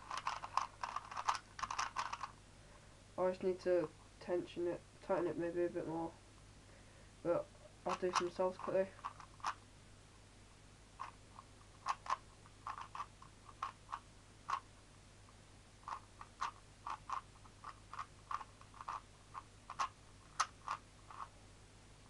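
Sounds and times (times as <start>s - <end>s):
plastic cube clicking: 0.0s - 2.3s, 7.9s - 9.6s, 11.8s - 14.6s, 15.9s - 21.3s.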